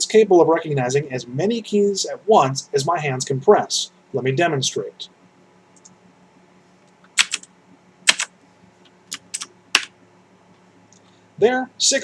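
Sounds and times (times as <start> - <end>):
mechanical keyboard keys clicking: 7.2 - 7.5, 8.1 - 8.3, 9.1 - 9.9.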